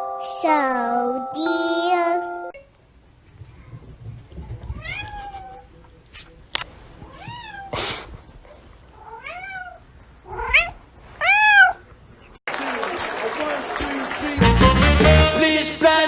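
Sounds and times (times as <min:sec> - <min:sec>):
cat meowing: 0:04.6 - 0:05.7, 0:07.0 - 0:07.8, 0:09.0 - 0:11.9.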